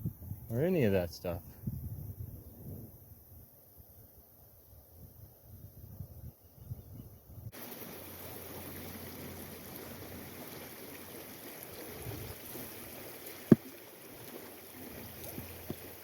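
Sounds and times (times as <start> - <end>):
river water running: 7.5 - 16.0.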